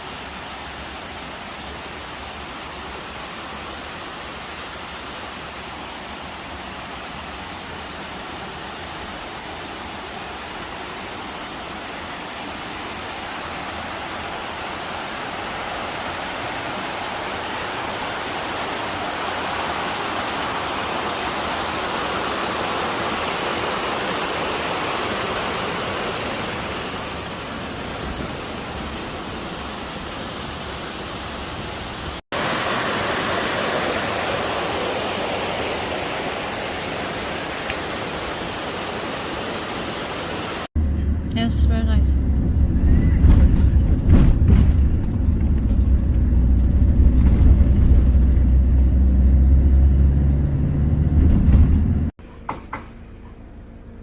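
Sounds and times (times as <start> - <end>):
waterfall rushing: 0.0 - 40.8.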